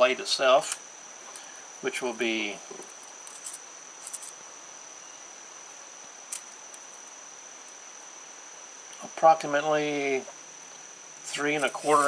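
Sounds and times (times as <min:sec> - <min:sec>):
high thin whine: 0:10.8 - 0:12.0.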